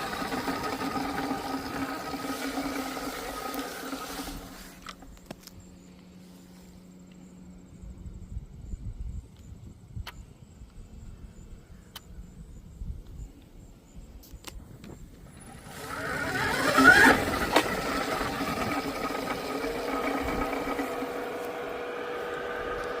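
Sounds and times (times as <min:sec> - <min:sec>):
electric motor whining: 0:00.0 - 0:05.4, 0:15.2 - 0:23.0.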